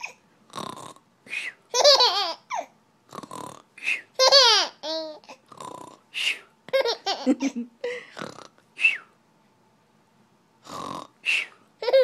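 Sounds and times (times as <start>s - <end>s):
breathy snoring snorts: 0.5s - 1.0s, 3.1s - 3.8s, 5.5s - 6.2s, 8.2s - 8.6s, 10.6s - 11.4s.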